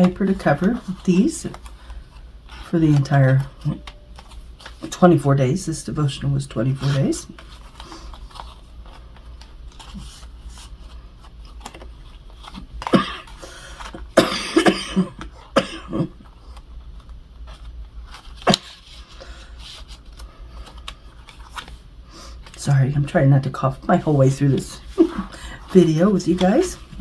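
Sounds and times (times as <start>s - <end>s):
person coughing: 12.8s - 13.4s, 14.1s - 16.3s.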